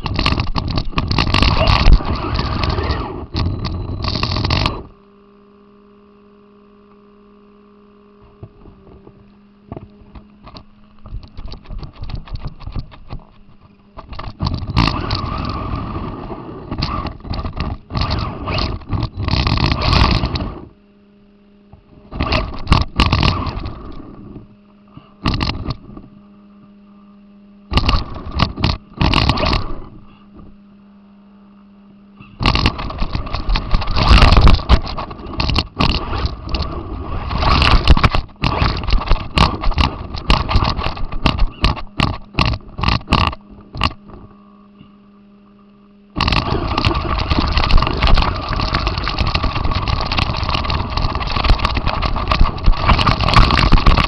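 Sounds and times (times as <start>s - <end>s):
drivetrain rattles and knocks: 0.0s - 4.8s, 8.2s - 15.8s, 16.7s - 20.6s, 21.7s - 24.4s, 25.2s - 26.1s, 27.7s - 30.6s, 32.2s - 44.3s, 46.2s - 54.0s
radio-controlled car driving: 0.0s - 26.1s, 27.7s - 30.7s, 32.2s - 45.1s, 46.1s - 54.0s
low hum: 0.0s - 54.0s.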